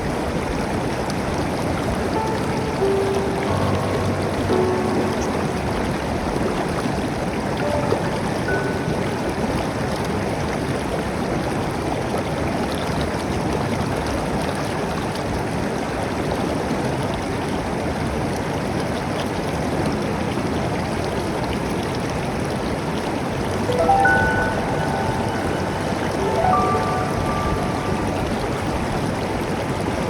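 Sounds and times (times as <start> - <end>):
river water rushing over stones: 0.0 - 10.6, 23.2 - 30.0.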